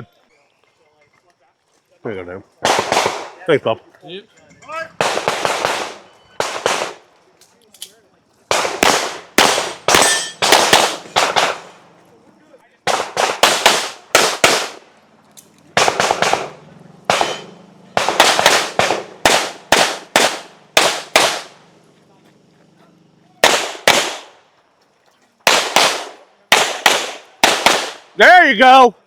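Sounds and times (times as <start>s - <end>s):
gunshots: 2.6s - 3.6s, 5.0s - 7.1s, 8.5s - 11.8s, 12.8s - 14.9s, 15.8s - 21.6s, 23.4s - 24.4s, 25.4s - 28.2s.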